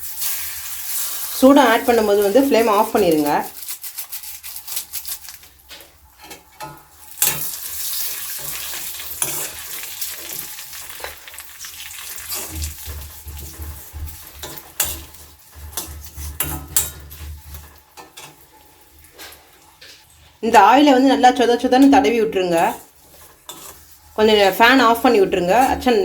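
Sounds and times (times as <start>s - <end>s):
oil sizzling in a pan: 0.0s - 26.0s
spoon stirring and clicking on pan: 2.6s - 11.4s, 12.2s - 18.5s, 21.8s - 23.9s.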